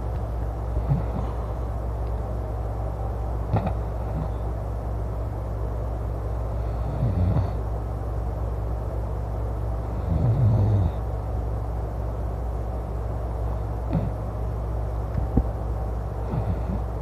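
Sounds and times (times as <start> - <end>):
steady low rumble: 0.0 - 17.0
man snoring loudly: 6.8 - 7.6, 10.0 - 11.0.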